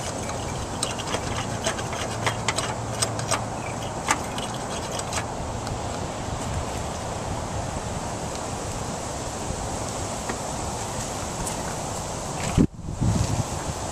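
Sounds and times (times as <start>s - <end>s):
hand tool clicking and scraping metal: 0.0s - 5.3s.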